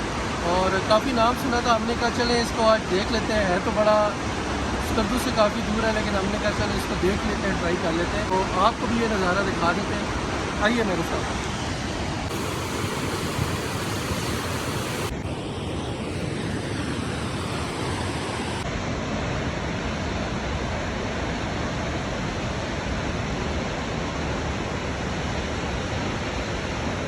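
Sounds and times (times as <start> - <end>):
waterfall rushing: 12.3 - 15.1.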